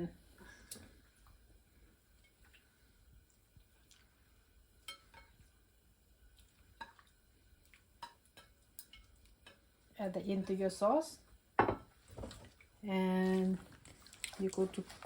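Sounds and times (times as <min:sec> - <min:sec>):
dishes and utensils clinking: 0:11.6 - 0:12.4.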